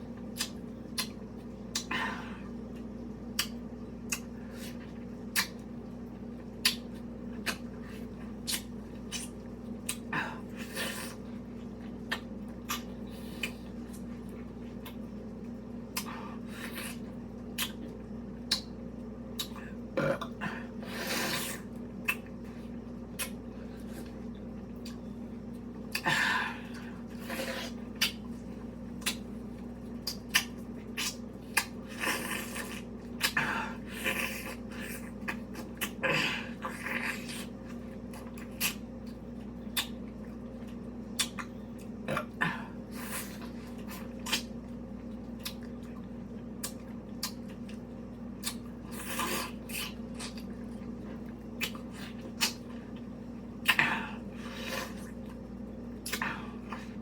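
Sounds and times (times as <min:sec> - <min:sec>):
steady low hum: 0:00.0 - 0:57.0
mouth smacks and clicks: 0:00.3 - 0:01.9, 0:06.6 - 0:07.7, 0:08.4 - 0:10.1, 0:16.8 - 0:17.8, 0:29.0 - 0:29.3, 0:30.0 - 0:31.8, 0:38.4 - 0:38.8, 0:39.7 - 0:40.0, 0:41.1 - 0:41.5, 0:48.4 - 0:48.7, 0:51.6 - 0:52.7.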